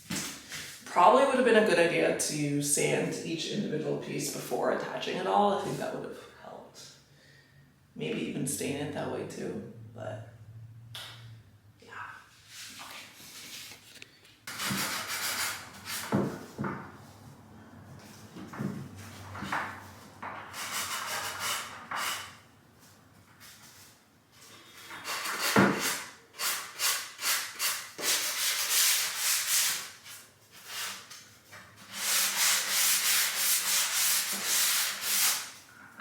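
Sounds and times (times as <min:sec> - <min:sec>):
sanding block rasping on wood: 0:14.5 - 0:16.2, 0:20.5 - 0:22.4, 0:25.0 - 0:30.0, 0:31.9 - 0:35.5.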